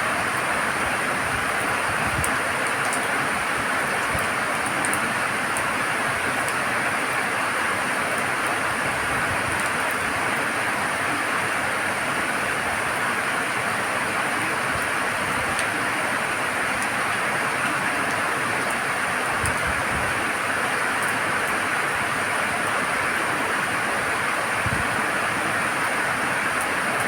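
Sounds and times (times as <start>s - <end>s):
steady rain hiss: 0.0s - 27.0s
raindrops ticking: 3.8s - 5.7s.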